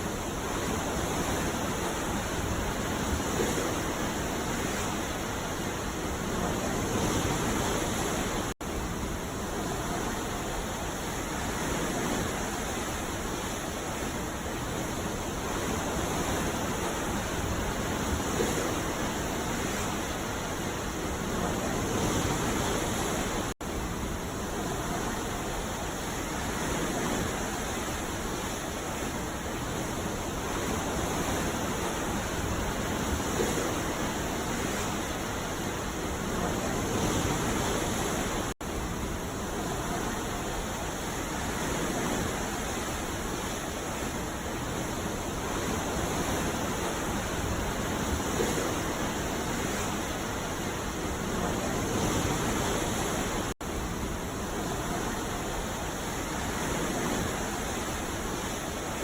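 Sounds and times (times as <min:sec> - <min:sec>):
ocean surf washing onto beach: 0:00.0 - 0:59.0.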